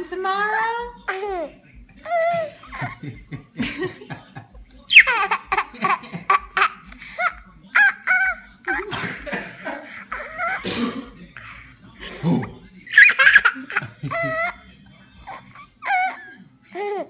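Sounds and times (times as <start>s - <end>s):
baby laughing: 1.1s - 3.1s, 4.9s - 10.7s, 11.4s - 11.6s, 12.9s - 17.0s
baby squealing: 4.9s - 5.7s, 12.9s - 14.4s.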